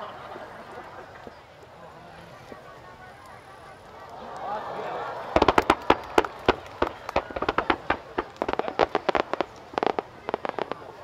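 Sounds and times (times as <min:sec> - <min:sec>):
fireworks cracking and banging: 0:05.1 - 0:11.0.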